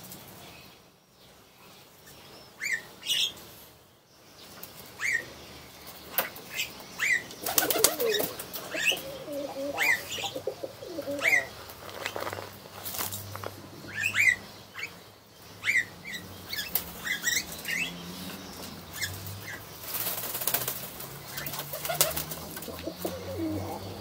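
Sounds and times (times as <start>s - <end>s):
pigeon chirping: 6.1s - 15.0s, 15.6s - 24.0s
pigeons cooing: 7.0s - 14.5s, 15.7s - 24.0s
wing flaps: 7.4s - 9.1s, 19.8s - 23.5s.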